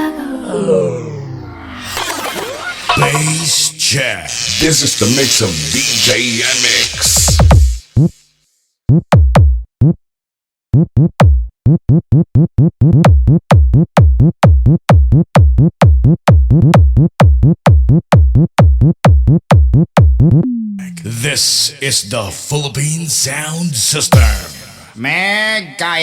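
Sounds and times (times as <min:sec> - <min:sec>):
long falling bass tone: 0:00.0 - 0:03.8, 0:20.3 - 0:21.1
drum machine kicks: 0:07.0 - 0:08.2, 0:08.9 - 0:10.0, 0:10.7 - 0:20.6, 0:24.2 - 0:24.4.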